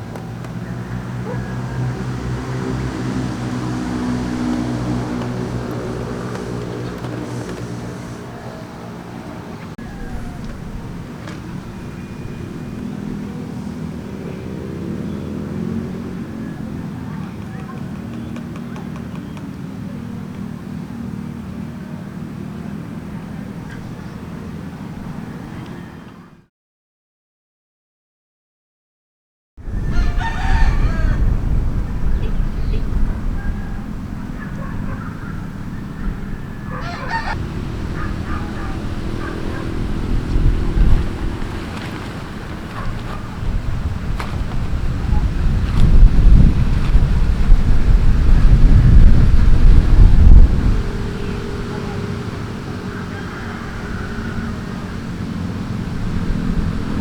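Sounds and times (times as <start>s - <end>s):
strong wind buffeting: 0.0s - 18.7s, 29.6s - 57.0s
vehicle engine humming: 0.0s - 26.3s, 29.7s - 57.0s
honk-like call: 34.4s - 43.5s, 50.6s - 55.2s.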